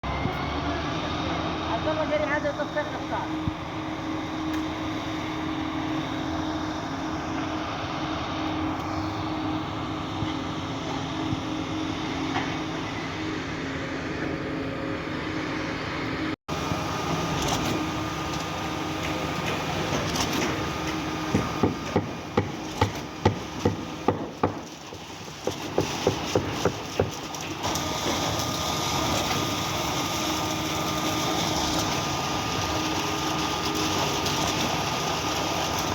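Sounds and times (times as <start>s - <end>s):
truck diesel engine running: 0.0s - 24.3s.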